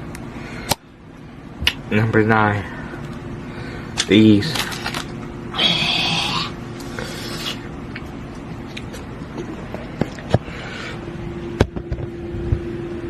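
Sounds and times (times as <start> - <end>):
faint steady hum: 0.0 - 13.0
candy wrapper rustling: 4.1 - 5.2.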